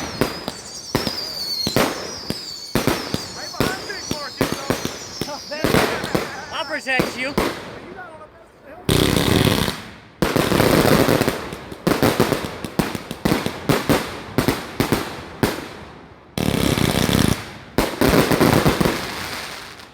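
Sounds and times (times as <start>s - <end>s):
firework cracking pops: 0.0s - 7.8s.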